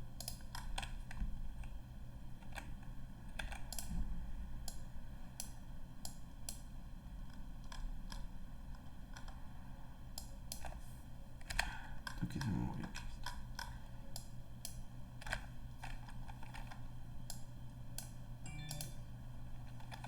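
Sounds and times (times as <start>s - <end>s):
steady low hum: 0.0s - 20.0s
keyboard and mouse clicks: 0.2s - 1.8s, 3.3s - 4.0s, 7.2s - 9.4s, 18.0s - 19.0s.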